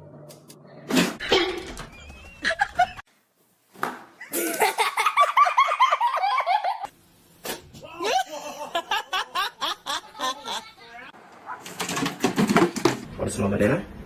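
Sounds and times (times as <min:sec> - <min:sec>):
person laughing: 0:04.2 - 0:06.9, 0:07.8 - 0:10.8.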